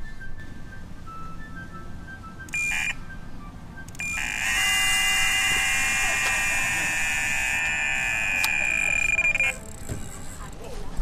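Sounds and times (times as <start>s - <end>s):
bite alarm high-pitched scream: 4.0s - 9.6s.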